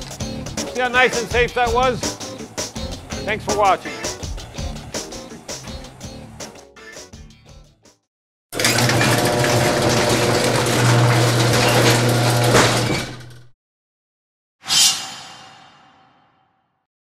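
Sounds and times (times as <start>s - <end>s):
loud mechanical grinding: 8.6s - 13.5s.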